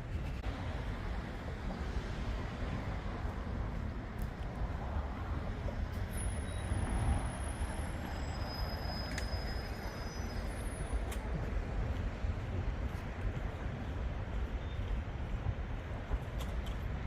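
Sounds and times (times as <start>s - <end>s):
low rumble of outdoor background noise: 0.0s - 17.0s.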